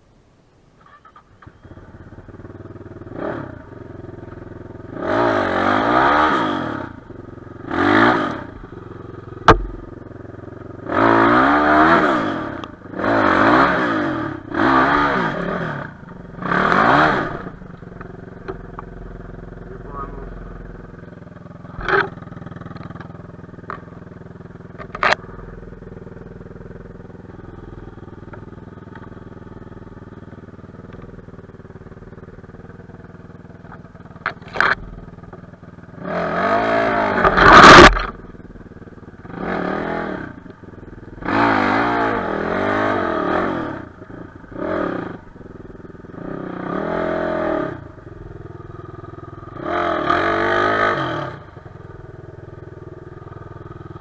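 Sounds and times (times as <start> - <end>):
motorcycle engine revving: 0.8 - 54.0
sharp knocks: 9.4 - 9.9.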